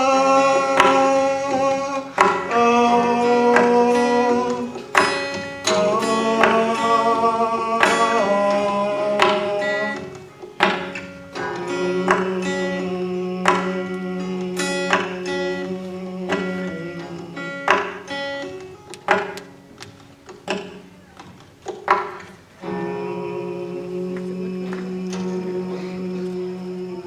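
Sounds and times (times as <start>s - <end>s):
acoustic guitar playing: 0.0s - 27.0s
sharp percussive hits: 0.5s - 20.9s.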